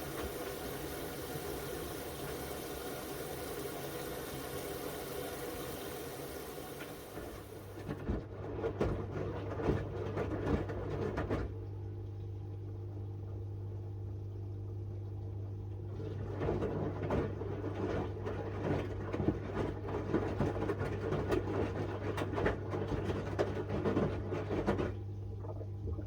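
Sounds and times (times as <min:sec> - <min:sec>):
steady hum: 0:00.0 - 0:07.7
washing machine drum tumbling: 0:00.0 - 0:07.8.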